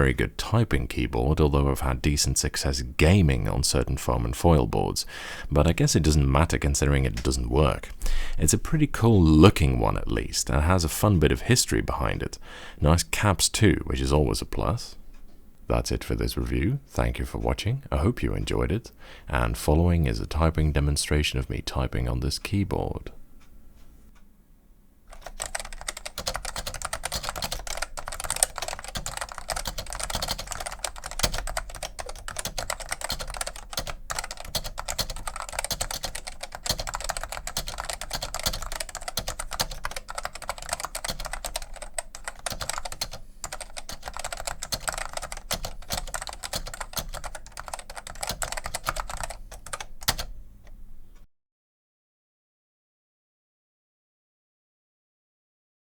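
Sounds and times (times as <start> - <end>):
fast keyboard typing: 25.1 - 50.4.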